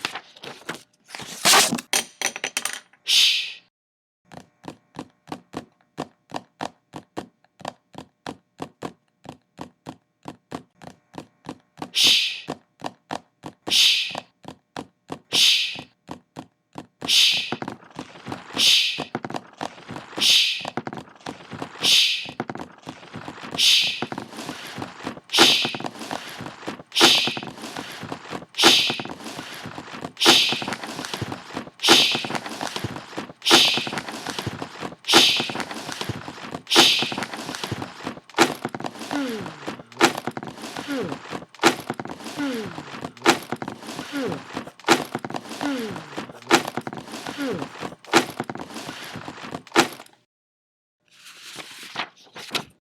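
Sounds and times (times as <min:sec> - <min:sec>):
hissing bursts: 0:13.7 - 0:14.2, 0:15.3 - 0:15.9, 0:17.1 - 0:17.6, 0:18.5 - 0:19.1, 0:20.2 - 0:20.8, 0:21.8 - 0:22.4.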